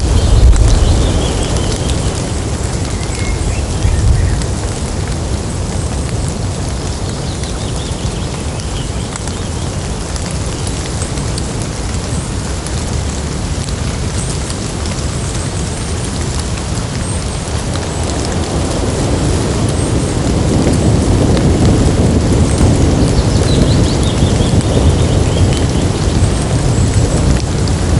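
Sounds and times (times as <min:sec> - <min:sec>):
low rumble of thunder: 0:00.0 - 0:06.7, 0:17.5 - 0:27.9
rain pattering on leaves: 0:00.0 - 0:27.9.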